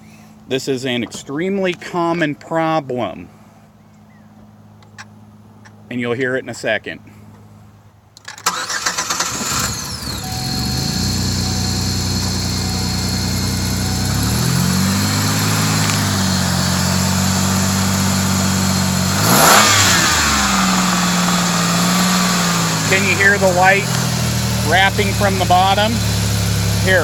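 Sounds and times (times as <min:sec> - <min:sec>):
car engine starting and idling: 0:08.2 - 0:27.0
engine revving: 0:08.5 - 0:27.0.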